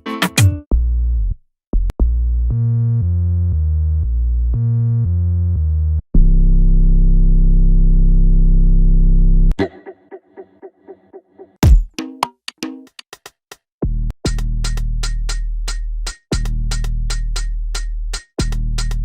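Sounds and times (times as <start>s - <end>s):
synthesizer bass notes: 0.4s - 9.6s.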